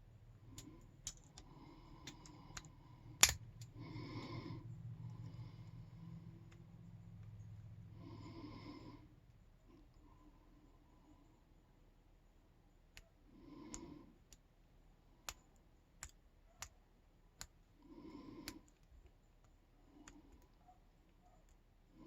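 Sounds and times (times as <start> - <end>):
soft breathing: 0.3 - 15.6, 17.4 - 20.8
lock pick clicks in padlock: 0.6 - 3.7.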